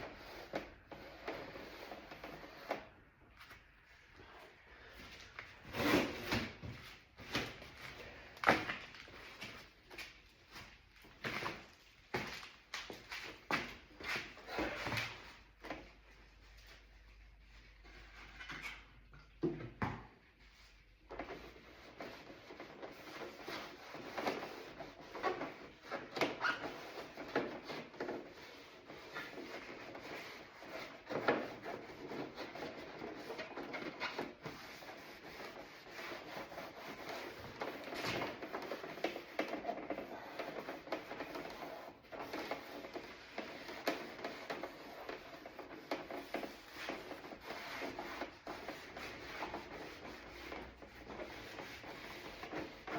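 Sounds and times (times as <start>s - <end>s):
hand scrubbing a door panel: 21.4s - 52.9s.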